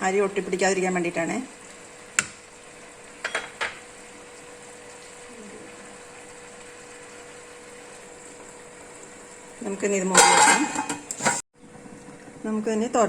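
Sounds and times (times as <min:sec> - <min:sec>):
metal cookware clinks: 0:10.1 - 0:11.4.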